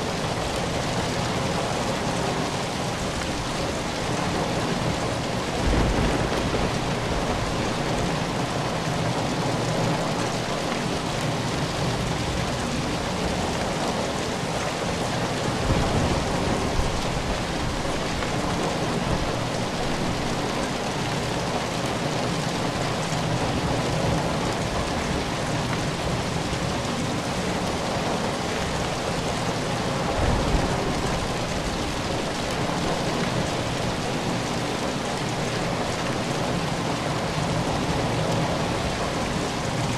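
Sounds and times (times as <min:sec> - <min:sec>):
steady rain falling: 0:00.0 - 0:39.9
low rumbles of thunder: 0:03.0 - 0:10.2, 0:15.3 - 0:20.5, 0:28.6 - 0:34.8.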